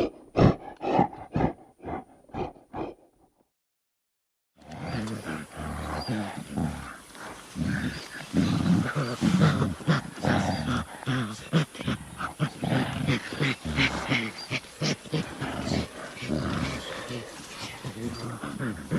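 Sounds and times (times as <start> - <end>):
gorilla low calls: 4.7 - 18.9.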